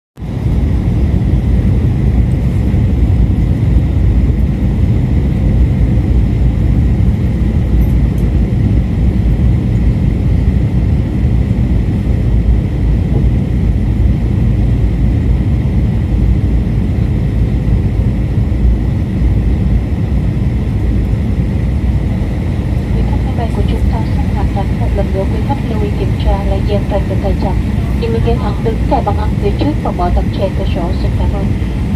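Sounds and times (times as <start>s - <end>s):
airplane cabin engine rumble: 0.2s - 31.9s
thin steady whine: 20.7s - 31.9s.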